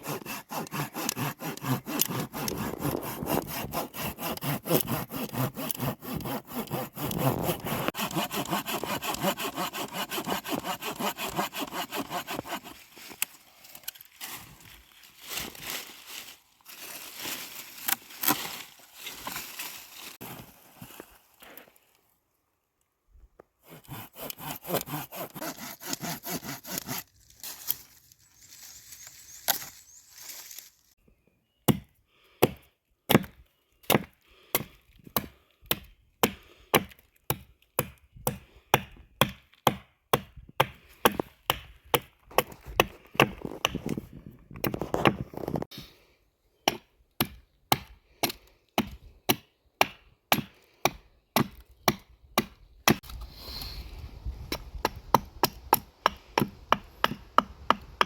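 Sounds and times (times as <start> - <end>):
axe chopping wood: 31.7 - 44.0, 46.7 - 53.0, 54.5 - 58.0.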